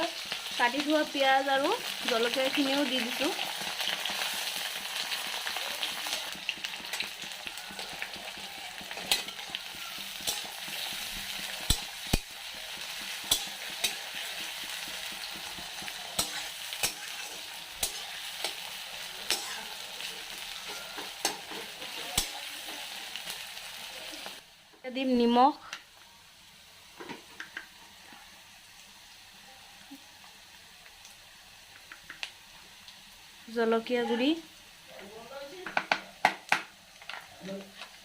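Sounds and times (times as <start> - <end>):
onions sizzling in hot oil: 0.0 - 38.0
utensil knocking against pan: 35.6 - 36.7.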